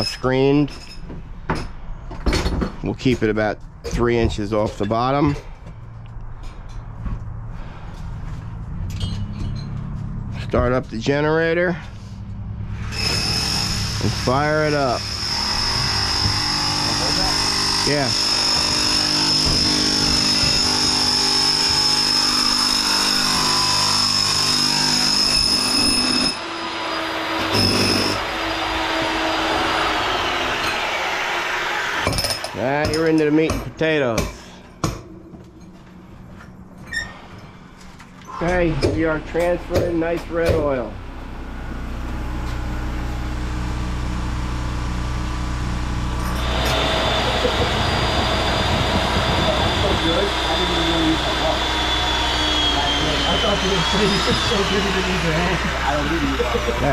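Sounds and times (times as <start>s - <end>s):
generator mechanical drone: 3.0s - 33.3s, 34.7s - 56.9s
fuel pump high whine: 5.4s - 33.0s, 34.3s - 56.9s
generator and pump humming: 34.4s - 56.9s.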